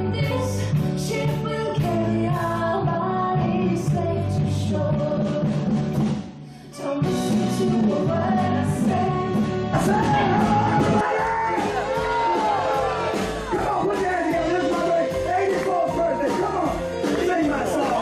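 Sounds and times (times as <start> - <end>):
rock song with singing: 6.8 - 18.0.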